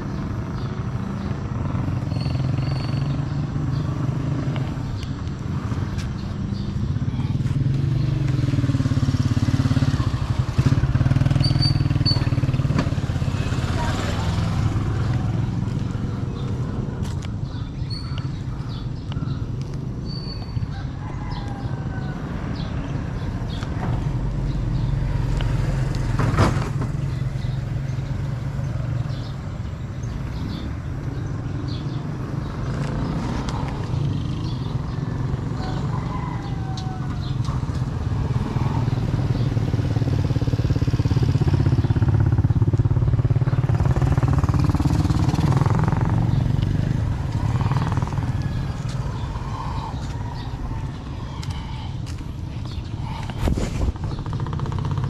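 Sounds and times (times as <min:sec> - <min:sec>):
vehicle engine running: 0:00.0 - 0:19.8, 0:36.8 - 0:55.0.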